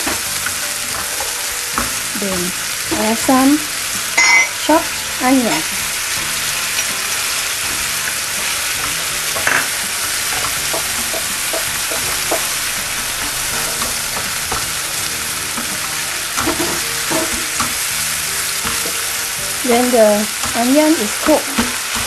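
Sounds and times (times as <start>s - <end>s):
food sizzling in hot oil: 0.0s - 22.0s
utensil scraping and tapping pan: 8.8s - 12.5s.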